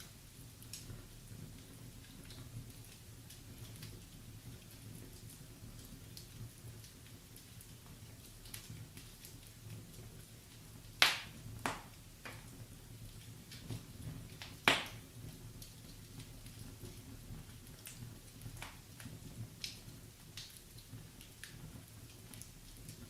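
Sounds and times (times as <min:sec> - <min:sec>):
wood fire crackling: 0:00.0 - 0:23.0
loud sharp pops of fire: 0:10.9 - 0:12.6, 0:13.2 - 0:23.0.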